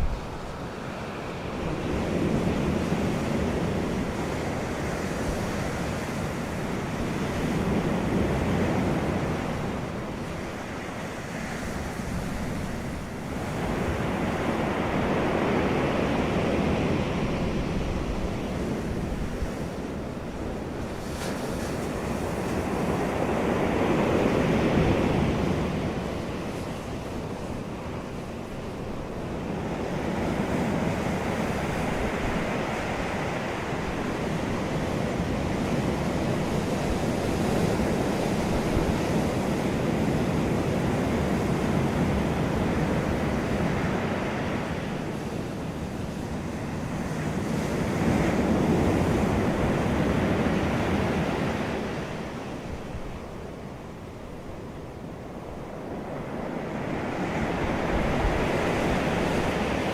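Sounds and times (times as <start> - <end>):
ocean waves breaking on shore: 0.0 - 59.9.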